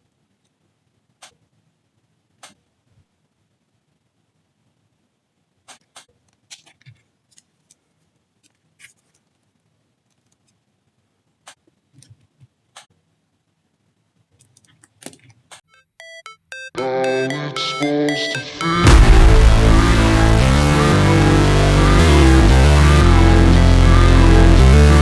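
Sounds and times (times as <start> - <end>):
electronic music with beeping tones: 16.0 - 25.0.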